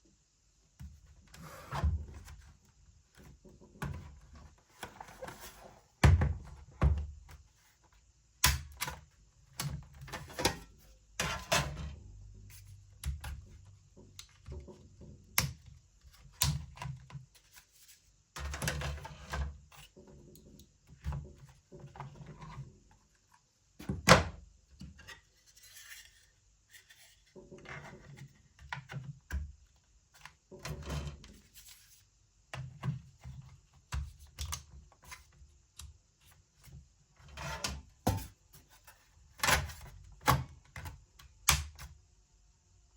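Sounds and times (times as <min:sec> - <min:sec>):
laptop parts clicking and knocking: 0:38.1 - 0:38.4.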